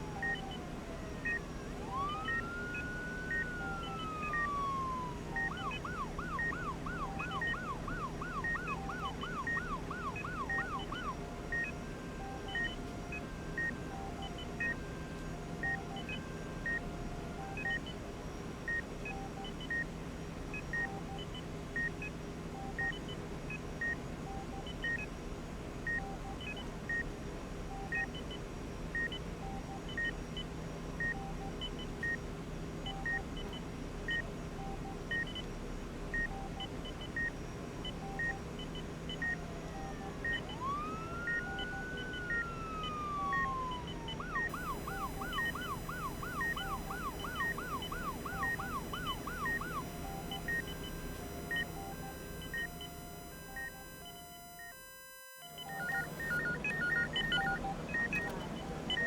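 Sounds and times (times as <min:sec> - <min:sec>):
siren wailing and yelping: 0:00.0 - 0:17.8, 0:39.0 - 0:59.0
low machine hum: 0:37.7 - 0:54.7
medical equipment beeping: 0:37.9 - 0:59.0.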